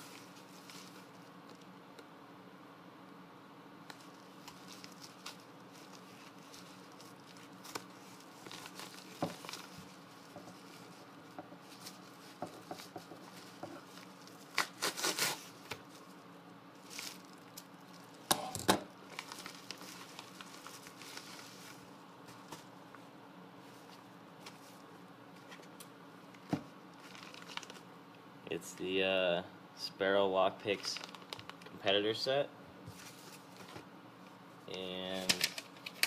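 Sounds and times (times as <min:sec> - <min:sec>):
packaging rustling and crinkling: 0:00.0 - 0:01.7, 0:03.9 - 0:18.3, 0:19.0 - 0:22.8, 0:26.4 - 0:27.9, 0:30.7 - 0:31.7, 0:32.9 - 0:33.9
faint steady hum: 0:00.0 - 0:36.0
packaging tearing: 0:03.9 - 0:10.0, 0:13.3 - 0:16.1, 0:19.1 - 0:21.8, 0:27.0 - 0:27.8, 0:30.8 - 0:31.7.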